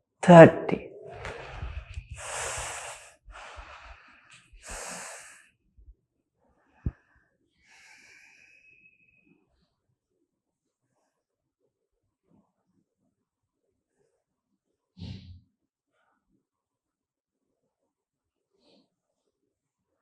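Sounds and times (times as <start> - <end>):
person breathing hard: 1.0 - 5.6, 6.8 - 8.8.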